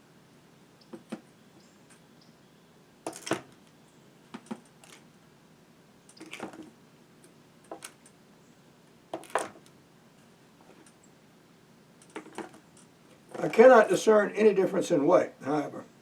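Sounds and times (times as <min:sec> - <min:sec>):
chainsaws knocking when set down: 0:03.1 - 0:03.6.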